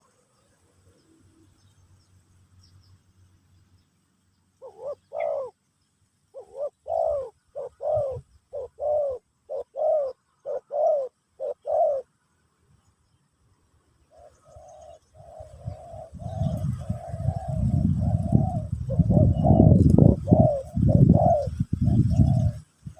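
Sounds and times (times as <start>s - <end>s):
dove cooing: 4.6s - 5.6s, 6.3s - 12.2s, 14.1s - 22.9s.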